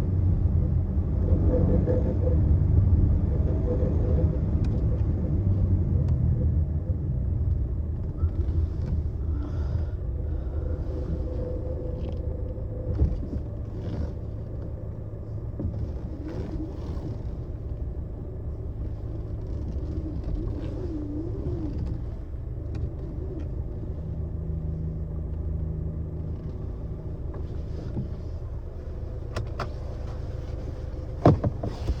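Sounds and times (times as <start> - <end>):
car road rumble: 0.0 - 32.0
rattles and knocks: 31.2 - 32.0.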